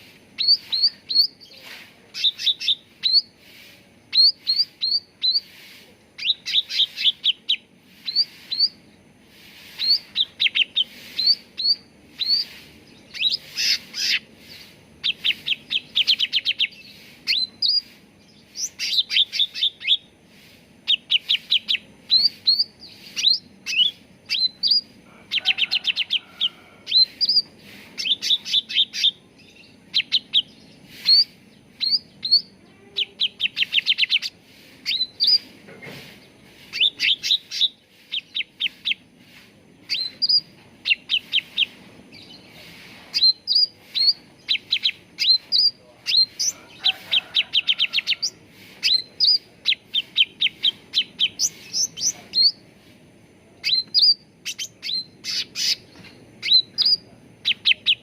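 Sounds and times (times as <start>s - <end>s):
bird singing trilled notes: 4.1s - 5.5s.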